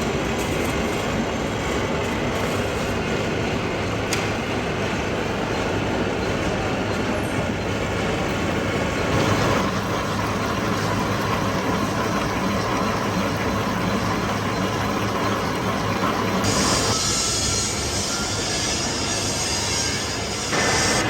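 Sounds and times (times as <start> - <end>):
metal lathe humming: 7.6 - 17.8.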